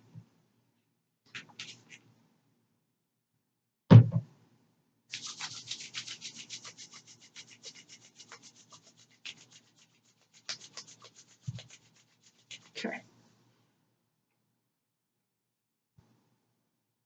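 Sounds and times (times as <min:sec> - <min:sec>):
loud thump: 0:03.9 - 0:04.2
rubbing or brushing strokes: 0:05.1 - 0:13.0.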